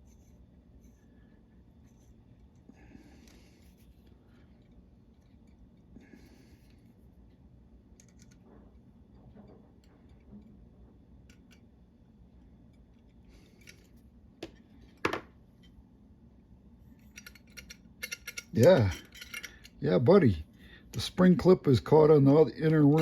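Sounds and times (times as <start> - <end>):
small metal parts clicking and scraping: 17.0 - 19.8.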